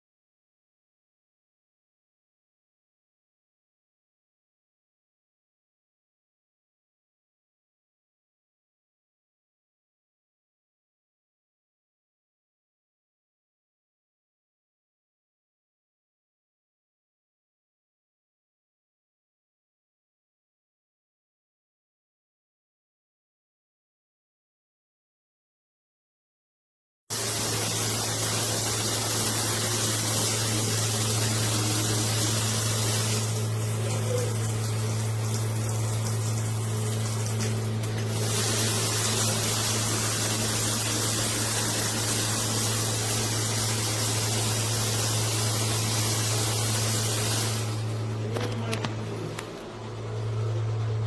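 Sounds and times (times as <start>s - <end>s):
running water: 27.1s - 49.6s.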